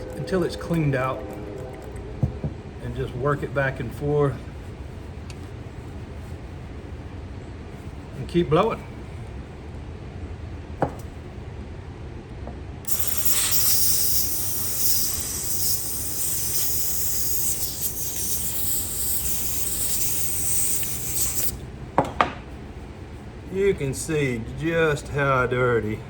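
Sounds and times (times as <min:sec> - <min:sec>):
compressed air hissing: 0:12.9 - 0:21.6.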